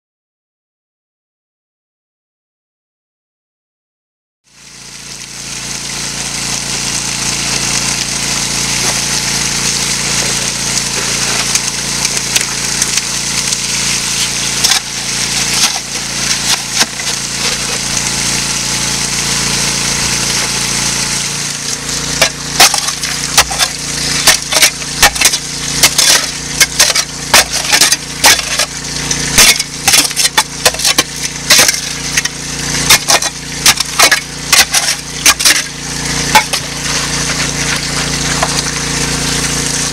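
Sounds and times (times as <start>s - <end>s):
water pump engine running: 4.5s - 39.9s
water rushing: 4.8s - 39.9s
rocks and gravel clattering: 10.0s - 18.0s, 22.1s - 38.8s.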